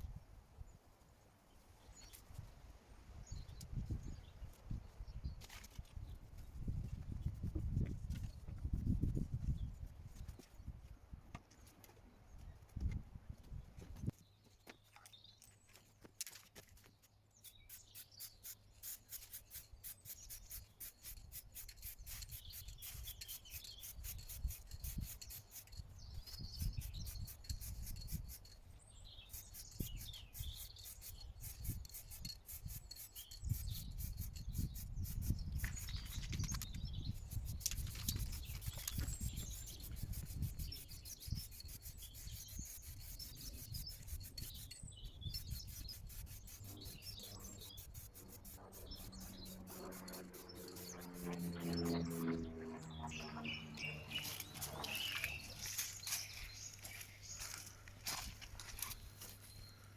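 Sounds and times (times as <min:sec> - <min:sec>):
birds chirping: 0:17.0 - 0:59.9
rubbing polish on boat hull: 0:37.2 - 0:53.2.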